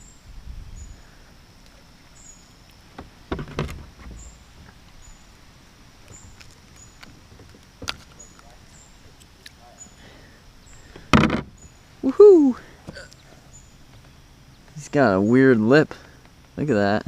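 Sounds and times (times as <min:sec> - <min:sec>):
knocks against kayak hull: 0:03.0 - 0:04.3, 0:11.0 - 0:11.6.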